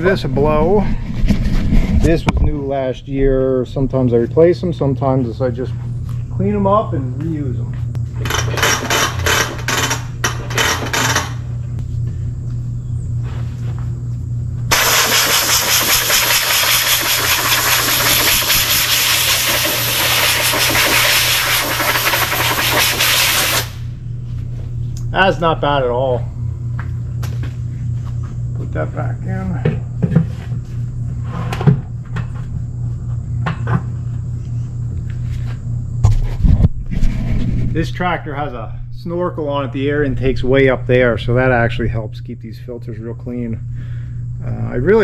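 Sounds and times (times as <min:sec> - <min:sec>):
steady low hum: 0:00.0 - 0:45.0
air blow gun hissing: 0:14.7 - 0:23.9.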